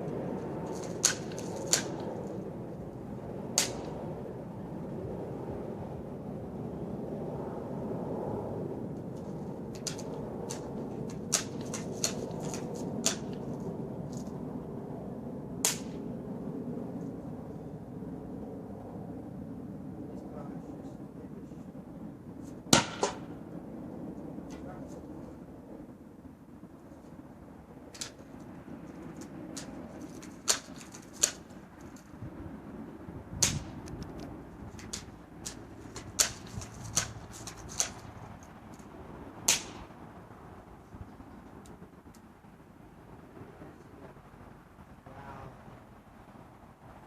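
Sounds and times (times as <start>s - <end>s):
bb gun firing cracks: 0.7s - 2.2s, 3.5s - 4.0s, 9.7s - 13.5s, 15.6s - 16.0s, 22.7s - 23.3s, 27.9s - 28.2s, 29.5s - 31.6s, 33.4s - 40.0s
bb gun clicks and snaps: 30.5s - 31.4s, 33.4s - 38.1s.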